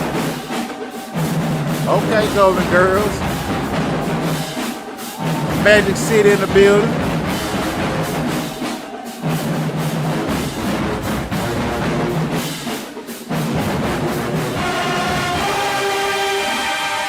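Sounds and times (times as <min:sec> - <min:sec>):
marching band drums: 0:00.0 - 0:15.8
horns holding a chord: 0:01.9 - 0:04.2, 0:05.6 - 0:07.1.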